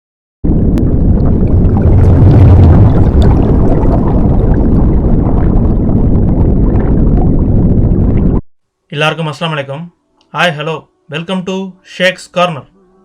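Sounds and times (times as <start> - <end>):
loud rushing rumbling noise: 0.4 - 8.4
scattered crackles: 0.4 - 8.4.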